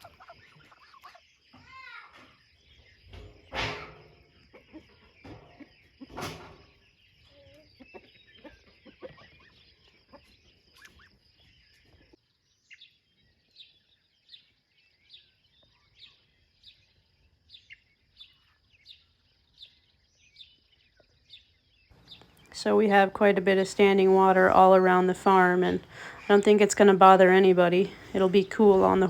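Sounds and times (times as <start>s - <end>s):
faint bird chirps: 0.0s - 22.6s.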